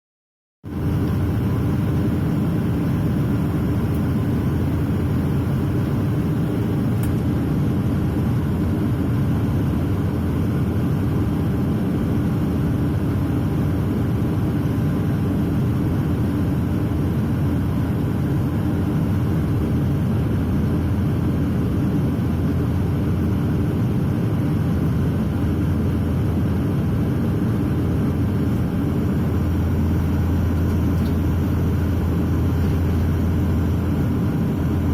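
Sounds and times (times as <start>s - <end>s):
propeller engine drone: 0.6s - 34.9s
low hum: 0.7s - 7.1s, 27.7s - 34.9s.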